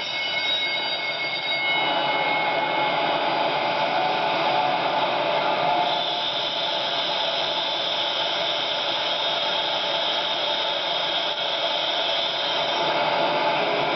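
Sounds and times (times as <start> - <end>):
ship engine room machinery hiss: 3.0 - 13.9.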